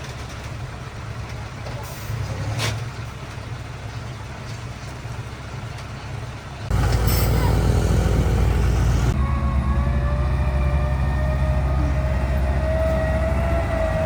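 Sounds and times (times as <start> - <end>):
diesel engine running: 6.3 - 14.0.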